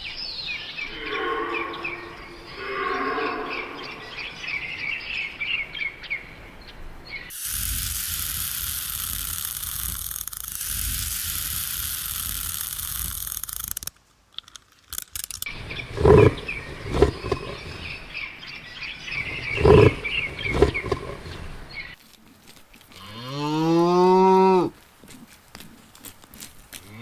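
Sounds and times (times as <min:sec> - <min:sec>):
loud low animal calls: 0:00.6 - 0:07.4, 0:15.5 - 0:22.0, 0:22.9 - 0:24.8
cow mooing: 0:00.8 - 0:04.4, 0:19.3 - 0:21.7, 0:22.9 - 0:24.8
higher chattering: 0:00.8 - 0:05.4, 0:19.0 - 0:22.0
animal hiss: 0:07.1 - 0:13.9, 0:19.0 - 0:22.0.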